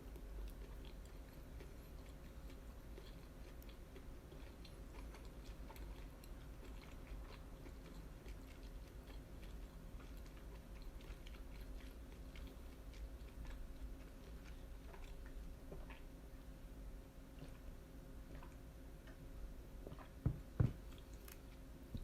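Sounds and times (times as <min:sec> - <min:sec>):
person chewing close to microphone: 0:00.0 - 0:16.4, 0:17.3 - 0:19.2, 0:19.8 - 0:20.2, 0:20.8 - 0:22.0
steady low hum: 0:00.0 - 0:22.0.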